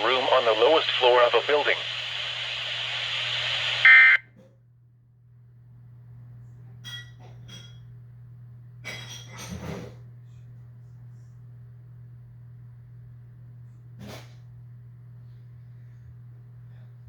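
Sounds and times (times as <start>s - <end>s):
radio hiss: 0.0s - 4.2s
low steady hum: 0.0s - 9.2s.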